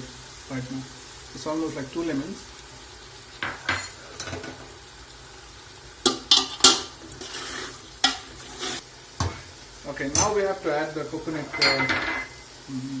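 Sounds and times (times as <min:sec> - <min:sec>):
utensils clinking against pot: 0:03.4 - 0:04.6, 0:06.0 - 0:07.4, 0:08.0 - 0:09.4, 0:11.5 - 0:12.4.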